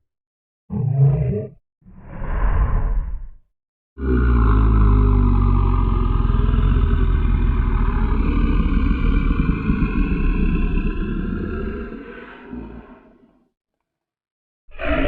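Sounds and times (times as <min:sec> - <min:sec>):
deep rattling monster growl: 0:04.0 - 0:13.3.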